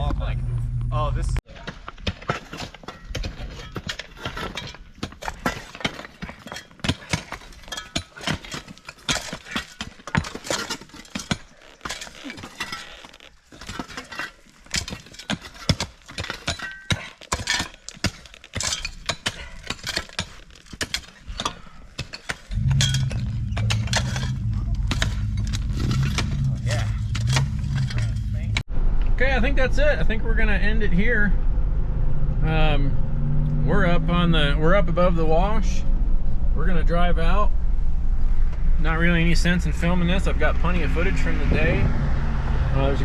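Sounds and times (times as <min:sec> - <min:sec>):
vehicle engine running: 0:22.6 - 0:28.9.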